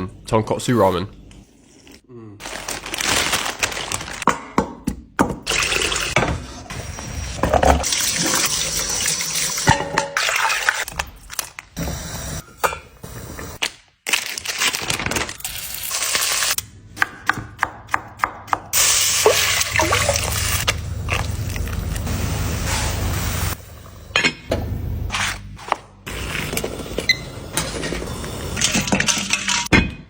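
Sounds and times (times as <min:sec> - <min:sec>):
water pouring into sink: 0:05.5 - 0:06.2, 0:07.8 - 0:10.9, 0:19.2 - 0:20.6.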